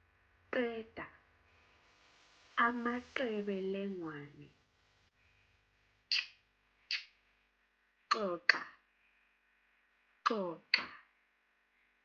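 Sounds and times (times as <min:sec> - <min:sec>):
lateral tongue clicks: 0:06.1 - 0:07.1, 0:10.2 - 0:11.0.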